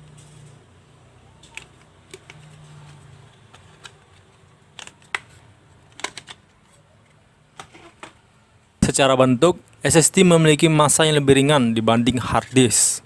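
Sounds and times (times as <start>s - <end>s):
packaging clicks and taps: 1.4s - 8.2s.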